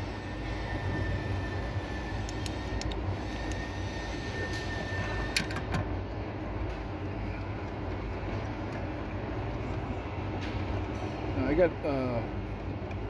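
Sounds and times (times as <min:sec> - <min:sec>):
parts clicking and tapping: 0:02.2 - 0:03.6.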